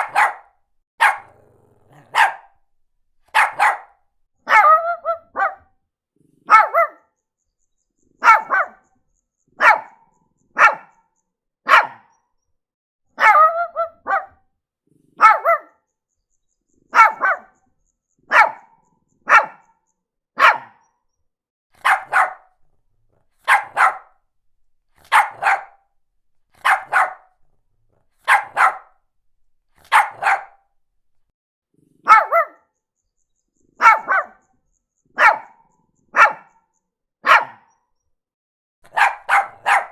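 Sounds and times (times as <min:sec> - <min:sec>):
small dog barking: 0:00.0 - 0:04.8, 0:05.4 - 0:05.6, 0:06.5 - 0:07.0, 0:08.2 - 0:08.8, 0:09.6 - 0:10.0, 0:10.6 - 0:10.9, 0:11.7 - 0:12.1, 0:13.2 - 0:14.3, 0:15.2 - 0:15.7, 0:17.0 - 0:17.5, 0:18.3 - 0:19.7, 0:20.4 - 0:20.8, 0:21.8 - 0:25.8, 0:26.5 - 0:30.7, 0:32.1 - 0:32.6, 0:33.8 - 0:34.4, 0:35.2 - 0:35.6, 0:36.2 - 0:36.6, 0:37.2 - 0:37.7, 0:38.8 - 0:39.9.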